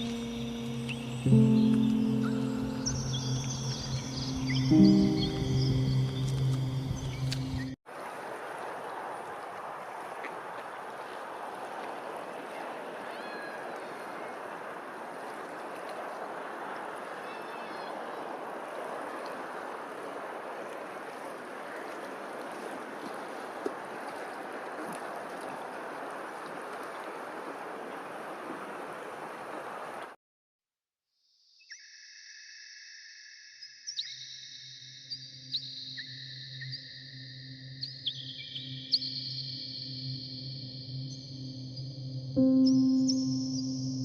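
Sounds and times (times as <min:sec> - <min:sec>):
faint bird chirps: 0:00.0 - 0:07.8, 0:31.5 - 0:44.0
running water rushing: 0:00.0 - 0:30.2.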